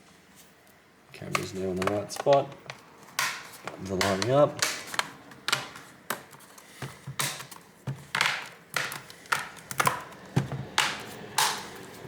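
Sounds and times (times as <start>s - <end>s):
plastic case clicks and taps: 7.1s - 11.7s.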